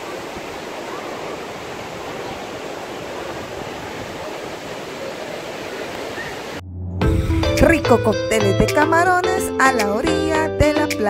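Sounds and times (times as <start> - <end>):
ocean surf on a beach: 0.0 - 6.6.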